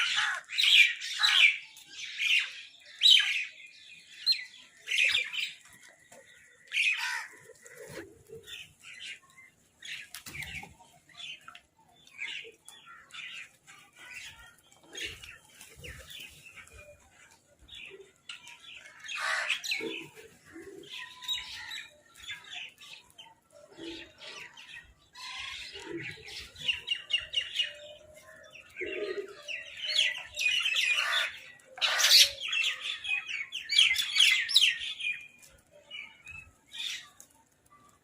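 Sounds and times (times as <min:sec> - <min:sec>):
crows and mynahs chattering: 0:00.0 - 0:01.6, 0:04.9 - 0:10.6, 0:18.8 - 0:22.2, 0:23.8 - 0:34.8.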